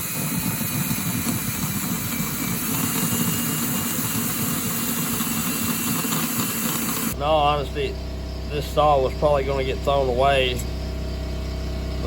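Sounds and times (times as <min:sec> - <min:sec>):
electric drill motor whine: 0:00.0 - 0:07.2.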